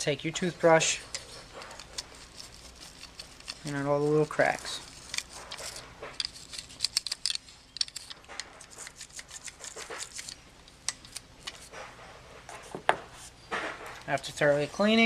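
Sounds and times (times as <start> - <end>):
toothbrush scrubbing plastic: 0.9 - 10.4.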